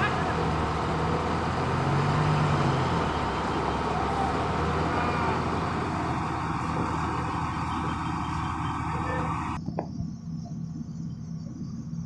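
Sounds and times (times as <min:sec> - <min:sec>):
road works noise: 0:00.0 - 0:09.6
traffic noise: 0:00.0 - 0:10.2
engine running steadily: 0:00.0 - 0:12.0.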